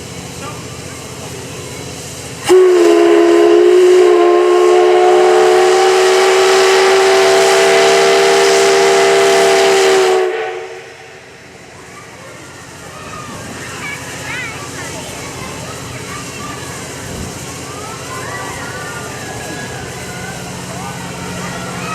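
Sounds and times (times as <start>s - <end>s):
steam hissing: 0.0s - 21.9s
steam locomotive whistle: 2.4s - 11.2s.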